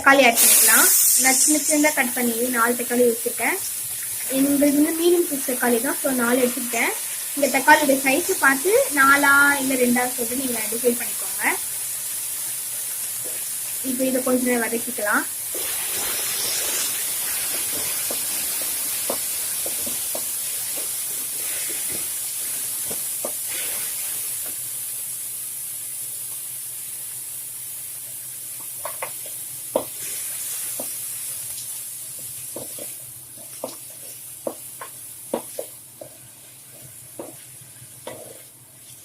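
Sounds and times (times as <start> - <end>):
tomatoes sizzling in a pan: 0.0 - 39.0
spatula knocking against pan: 32.6 - 33.8, 37.2 - 37.4.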